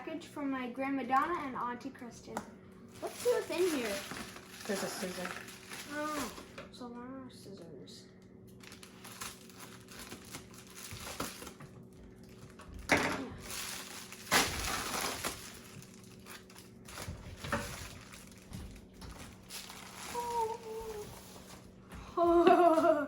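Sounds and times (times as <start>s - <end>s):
cardboard rustling and crinkling: 3.0s - 6.6s, 8.6s - 21.7s
cardboard ripping: 13.4s - 21.6s.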